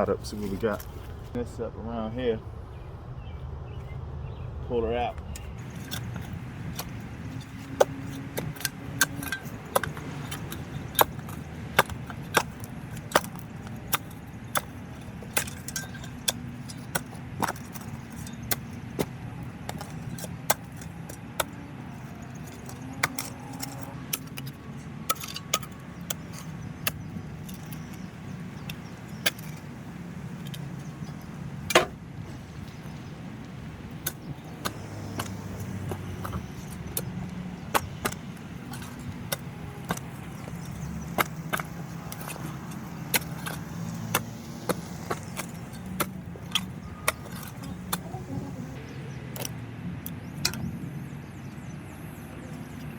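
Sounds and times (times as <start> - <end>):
vehicle engine running: 0.0 - 49.2
metallic clinks and knocks: 5.6 - 29.7.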